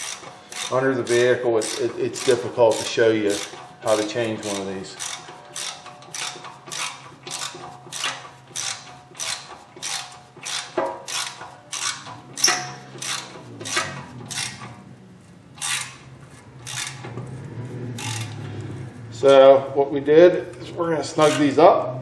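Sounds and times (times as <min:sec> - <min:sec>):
hand ratchet wrench clicking: 0:00.0 - 0:14.9, 0:15.6 - 0:19.4, 0:20.5 - 0:21.7.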